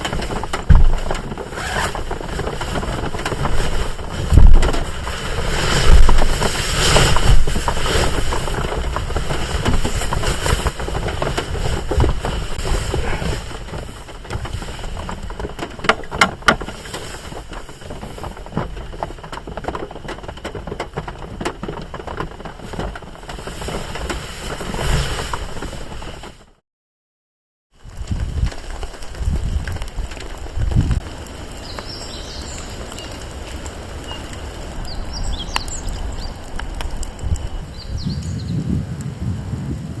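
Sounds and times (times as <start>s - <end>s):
low thumps: 0.0s - 26.2s
steady rain: 0.0s - 26.5s, 27.8s - 40.0s.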